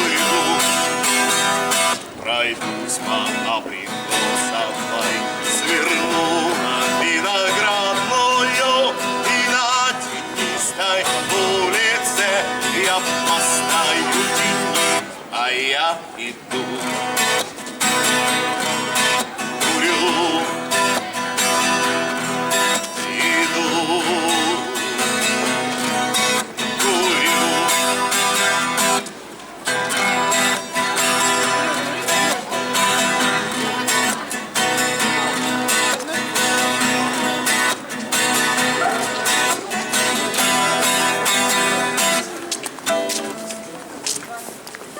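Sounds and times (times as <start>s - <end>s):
acoustic guitar strumming: 0.0s - 44.0s
wordless vocal notes: 26.6s - 28.2s.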